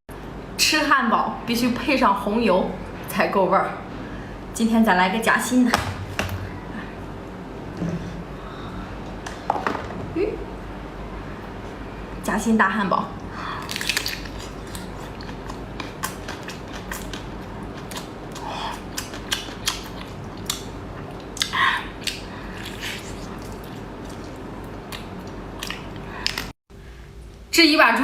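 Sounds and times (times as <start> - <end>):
crunching and chewing seafood: 13.3 - 26.6.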